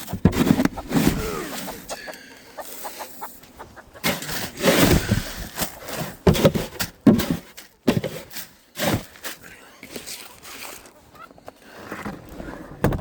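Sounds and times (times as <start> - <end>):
chickens clucking: 0.0 - 8.2, 10.0 - 11.6.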